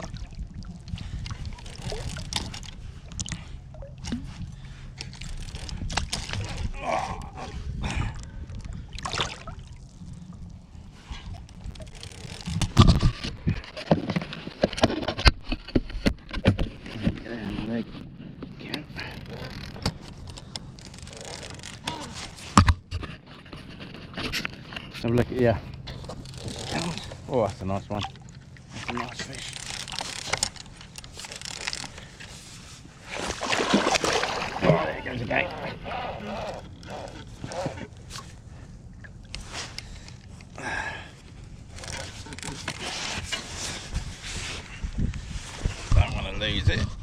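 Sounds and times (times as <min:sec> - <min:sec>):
water lapping against kayak hull: 0:00.0 - 0:17.2, 0:25.6 - 0:46.0
wind rumble on microphone: 0:00.0 - 0:18.2, 0:43.2 - 0:47.0.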